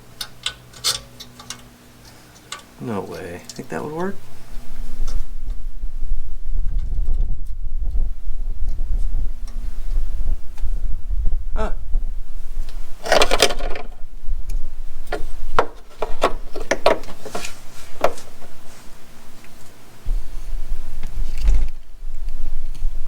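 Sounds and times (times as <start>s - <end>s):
wind rumble on microphone: 2.8s - 23.0s
rubbing scrape: 15.3s - 19.0s.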